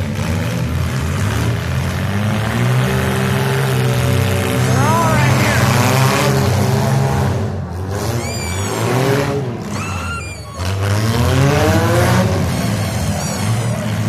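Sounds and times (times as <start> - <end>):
car engines revving: 0.0 - 14.0
high squeals: 8.1 - 9.0, 9.6 - 11.1.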